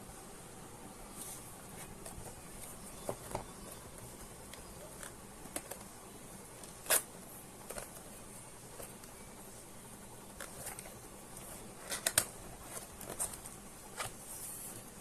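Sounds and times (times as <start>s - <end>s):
packaging clicks and rustles: 1.7s - 6.0s, 6.6s - 9.3s, 10.2s - 15.0s.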